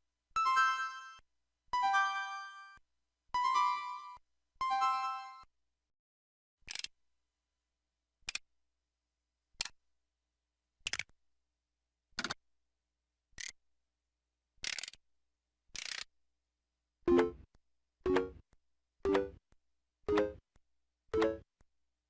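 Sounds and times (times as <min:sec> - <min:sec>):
synthesized phone sound effects: 0:17.1 - 0:17.4.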